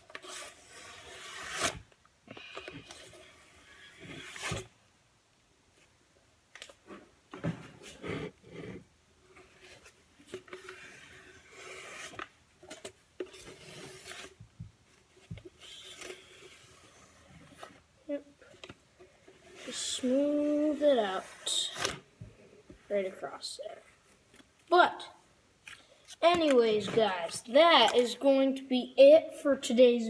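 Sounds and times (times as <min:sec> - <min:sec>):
paper scraping over glue: 0:13.3 - 0:14.4, 0:19.4 - 0:21.9.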